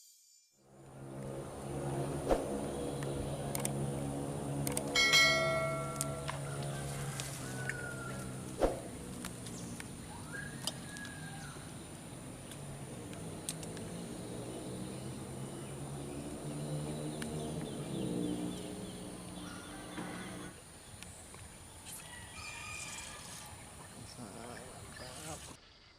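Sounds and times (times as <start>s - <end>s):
steady low hum: 0.7s - 21.8s
sharp click: 3.0s - 3.8s
birds and fowl calling: 4.2s - 25.6s.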